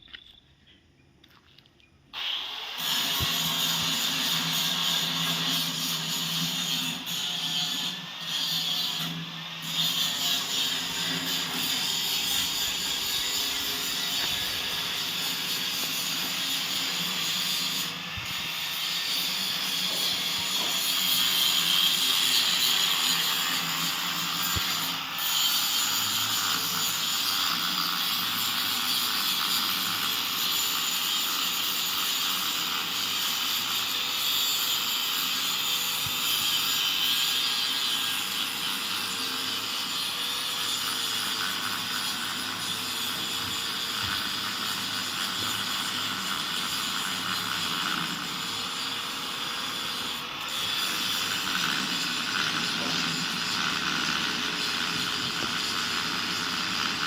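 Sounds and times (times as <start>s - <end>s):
loud hissing noise: 2.2s - 38.1s.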